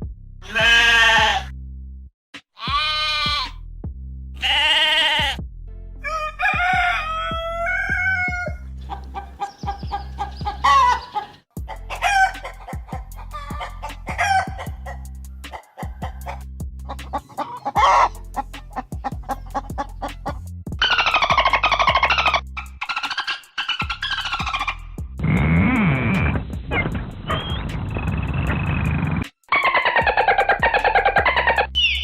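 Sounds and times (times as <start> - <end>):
background music with bass: 0.0 - 32.0
goat or sheep bleating: 0.4 - 1.5, 2.6 - 3.6, 4.4 - 5.4
rooster crowing: 6.0 - 8.6, 10.6 - 11.1, 11.9 - 12.4, 13.3 - 14.7, 17.5 - 18.1, 29.5 - 31.6
hens clucking: 6.4 - 24.8, 29.5 - 31.7.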